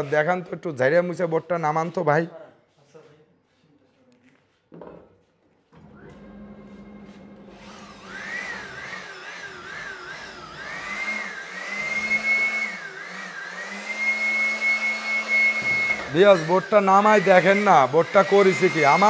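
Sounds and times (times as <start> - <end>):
vacuum motor running: 5.8 - 19.0
wavering motor whine: 5.8 - 19.0.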